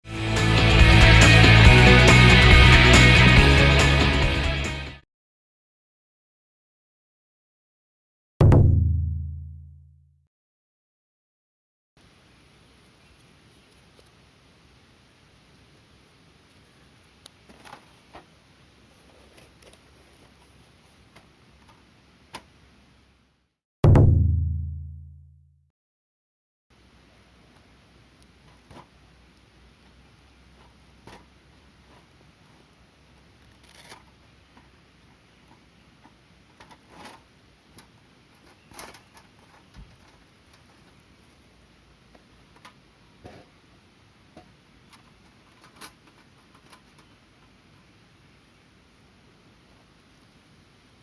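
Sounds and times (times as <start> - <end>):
low steady hiss: 12.0 - 23.5, 26.7 - 51.0
faint steady background noise: 12.0 - 23.6, 26.7 - 51.0.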